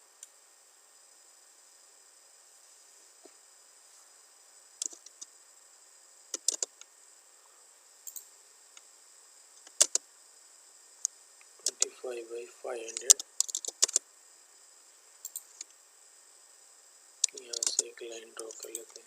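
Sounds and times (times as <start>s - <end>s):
faint steady hiss: 0.0s - 19.0s
mouse and keyboard clicks: 4.8s - 5.3s, 6.3s - 6.9s, 9.6s - 10.0s, 11.6s - 11.9s, 12.9s - 14.0s, 17.2s - 19.0s.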